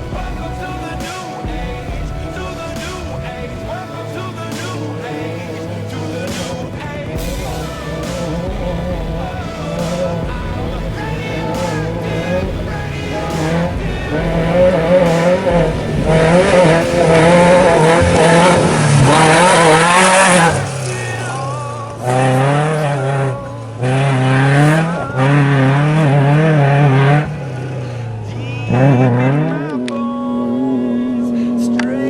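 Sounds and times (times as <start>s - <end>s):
truck engine revving high: 0.0s - 32.0s.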